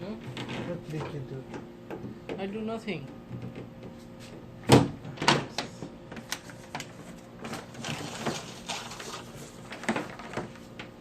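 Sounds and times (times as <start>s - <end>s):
rustling scrape: 6.9s - 9.9s.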